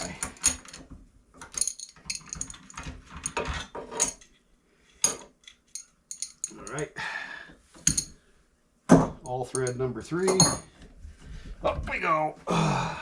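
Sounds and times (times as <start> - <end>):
metal tools clinking and clattering: 0.0 - 0.8, 1.4 - 4.4, 5.0 - 6.8, 7.9 - 8.2, 9.4 - 10.7.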